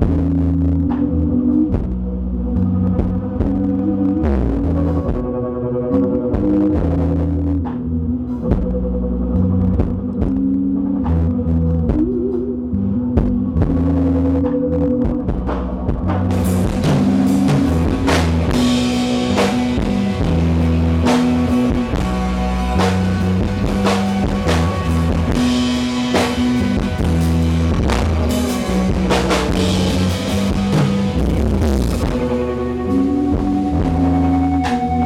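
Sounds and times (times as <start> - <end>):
bass and guitar notes: 0.0 - 35.0
drum kit hits and cymbals: 13.2 - 35.0.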